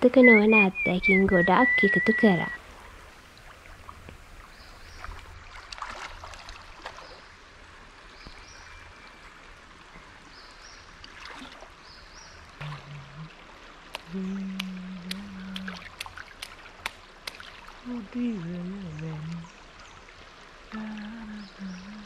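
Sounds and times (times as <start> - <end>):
stream flowing and trickling: 0.0 - 22.0
crackling clicks and splashes: 3.3 - 7.2, 13.8 - 17.9.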